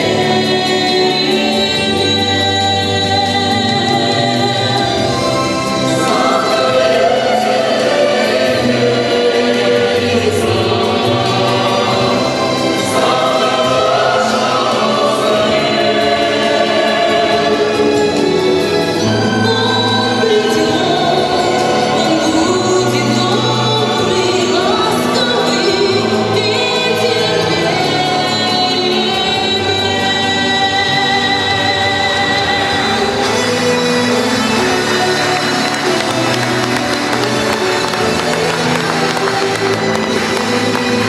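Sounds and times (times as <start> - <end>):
choir singing: 0.0 - 41.0
instrumental accompaniment: 30.6 - 41.0.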